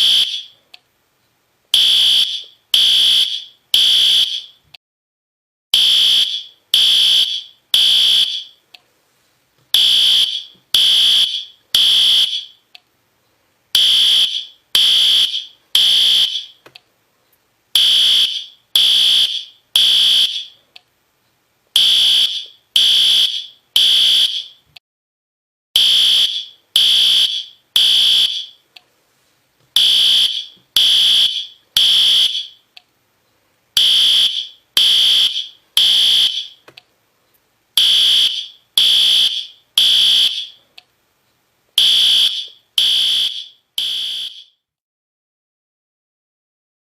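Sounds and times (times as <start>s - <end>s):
fire alarm horn blasts: 0.0s - 0.6s, 1.8s - 4.6s, 5.8s - 8.6s, 9.8s - 12.6s, 13.8s - 16.6s, 17.8s - 20.6s, 21.8s - 24.6s, 25.8s - 28.6s, 29.8s - 32.6s, 33.8s - 36.6s, 37.8s - 40.6s, 41.8s - 44.6s.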